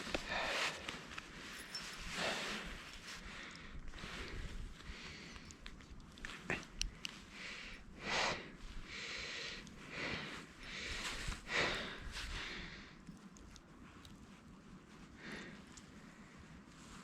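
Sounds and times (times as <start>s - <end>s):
person breathing and sniffing: 0.0s - 5.6s.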